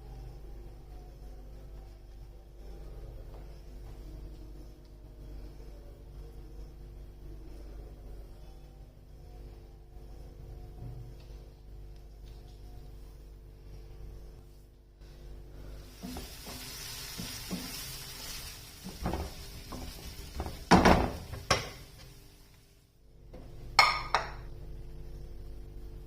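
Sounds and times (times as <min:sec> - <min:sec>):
soft sizzling hiss: 0:11.9 - 0:23.1.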